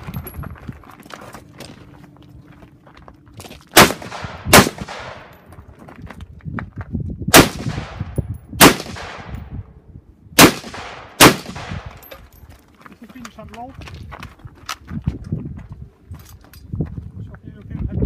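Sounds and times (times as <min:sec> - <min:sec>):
rifle shots with echo: 0:03.7 - 0:05.4, 0:07.3 - 0:09.4, 0:10.4 - 0:12.0.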